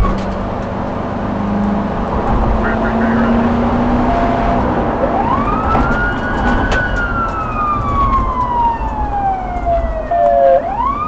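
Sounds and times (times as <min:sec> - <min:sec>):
engine and road rumble: 0:00.0 - 0:11.0
police siren wailing: 0:02.6 - 0:11.0.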